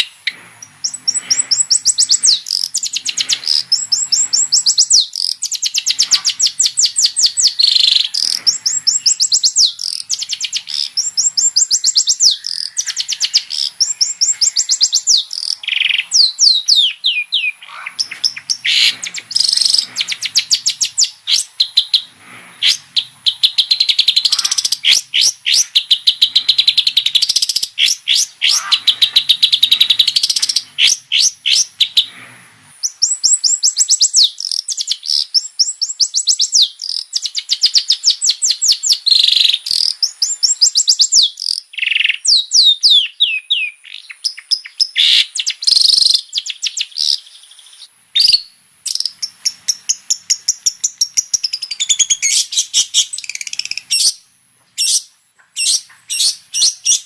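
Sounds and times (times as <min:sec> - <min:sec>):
shrike singing: 0:00.0 - 0:32.1.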